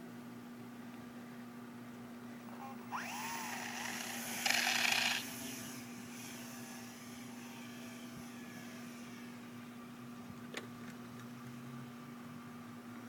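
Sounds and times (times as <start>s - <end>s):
small electric motor whining: 2.6s - 9.6s.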